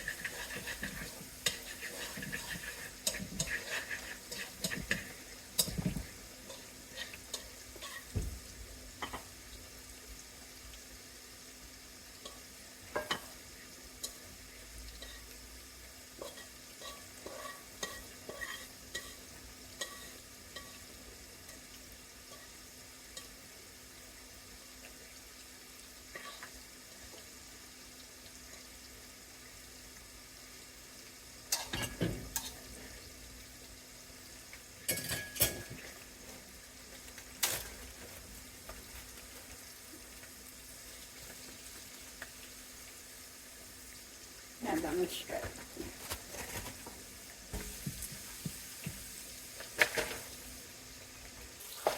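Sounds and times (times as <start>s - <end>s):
spatula scraping and tapping: 0.0s - 8.3s, 12.2s - 13.4s, 16.2s - 19.2s, 19.8s - 20.8s
rice frying in a pan: 0.0s - 51.9s.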